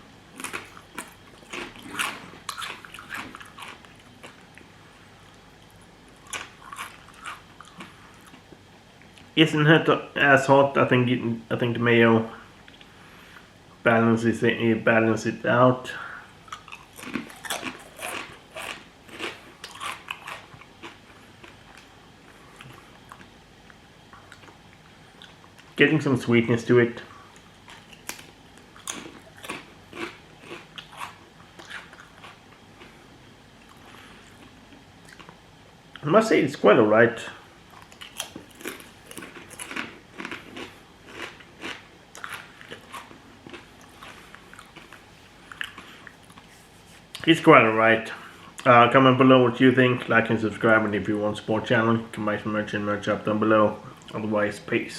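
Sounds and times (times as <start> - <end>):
crisps crunching: 0.3 - 4.5, 6.1 - 8.4, 16.5 - 21.9, 27.4 - 33.0, 37.8 - 46.5
quiet chewing: 0.4 - 9.3, 16.4 - 25.8, 27.0 - 33.0, 33.6 - 36.0, 37.7 - 47.3.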